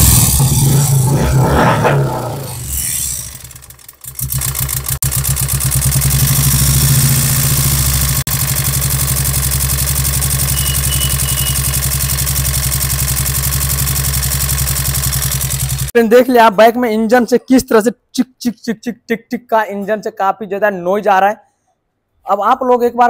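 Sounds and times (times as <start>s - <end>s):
motorcycle engine idling: 0.0s - 15.9s
engine top end ticking: 3.5s - 15.9s.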